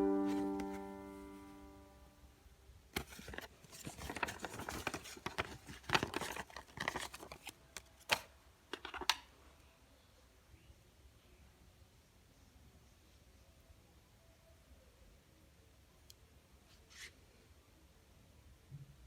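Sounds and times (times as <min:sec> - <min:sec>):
background music: 0:00.0 - 0:02.1.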